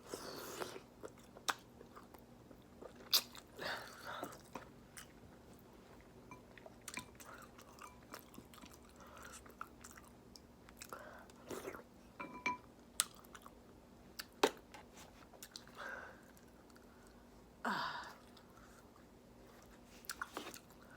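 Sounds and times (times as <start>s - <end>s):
chewing and mouth smacking: 6.6s - 11.8s.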